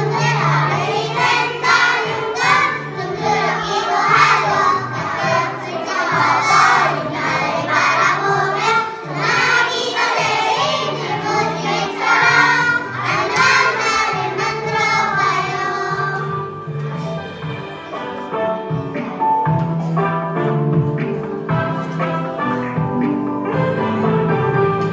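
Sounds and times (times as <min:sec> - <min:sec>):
children singing in unison: 0:00.0 - 0:16.3
instrumental accompaniment: 0:00.0 - 0:24.9.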